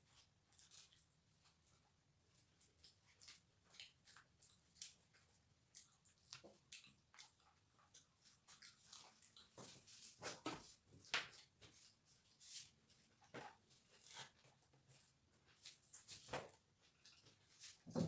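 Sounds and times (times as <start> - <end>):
chewing and mouth smacks: 2.7 - 9.7.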